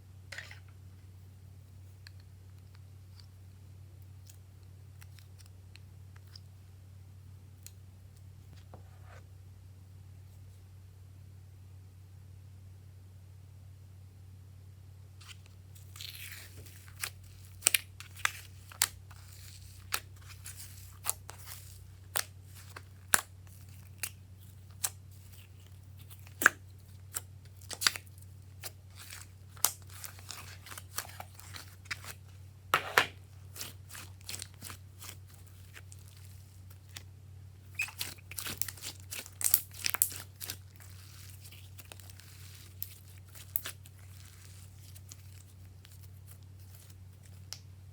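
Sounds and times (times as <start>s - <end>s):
slime squeezed by hand: 37.7s - 44.7s.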